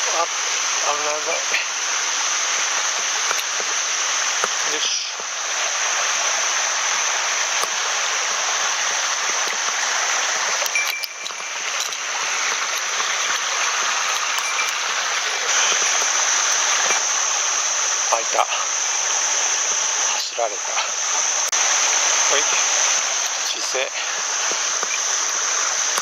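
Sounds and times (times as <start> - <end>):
stream water rushing: 0.0 - 26.0.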